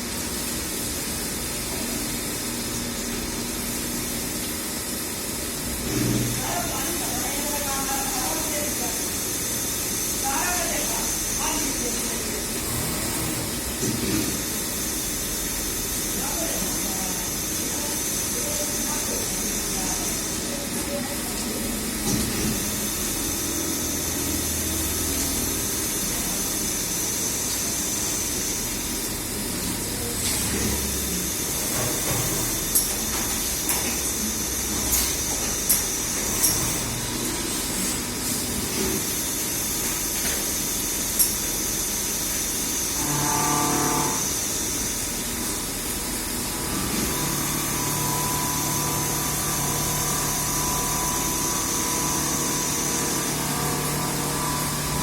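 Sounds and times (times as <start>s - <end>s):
machine whining: 42.5s - 45.2s, 46.2s - 55.0s.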